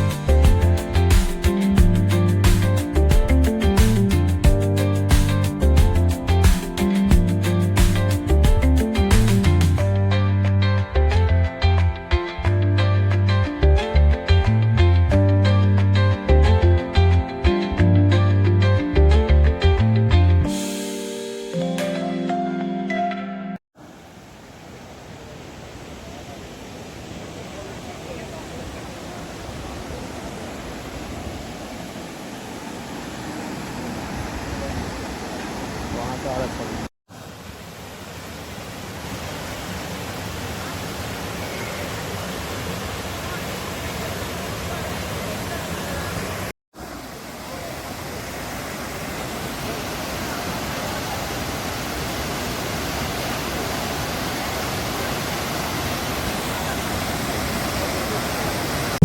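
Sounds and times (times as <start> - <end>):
waterfall rushing: 23.8 - 59.0.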